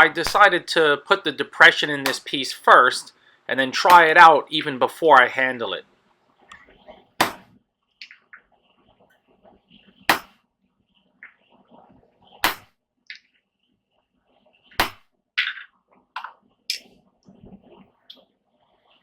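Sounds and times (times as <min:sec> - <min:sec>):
hammer striking metal punch: 0:07.2 - 0:07.5, 0:10.1 - 0:10.4, 0:12.4 - 0:12.7, 0:14.8 - 0:15.0.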